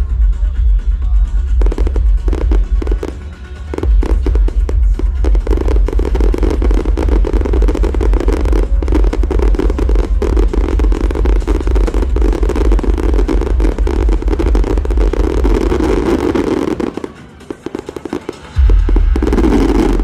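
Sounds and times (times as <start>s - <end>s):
fireworks bangs and crackles: 1.5s - 20.0s
deep rumble: 3.8s - 16.0s, 18.6s - 20.0s.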